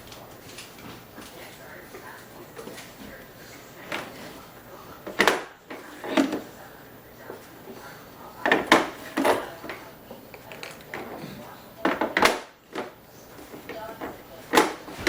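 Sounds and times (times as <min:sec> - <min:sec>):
clattering knocks of hard objects: 0:05.0 - 0:06.5, 0:08.4 - 0:15.0.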